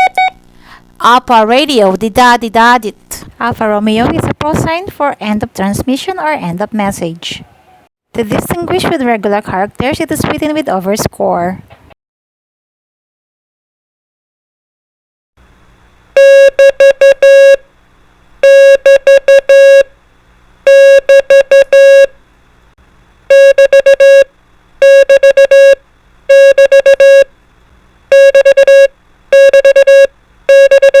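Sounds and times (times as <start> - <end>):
morse code beep tone: 0.0 - 0.4, 16.2 - 17.6, 18.4 - 19.9, 20.7 - 22.1, 23.3 - 27.3, 28.1 - 31.0.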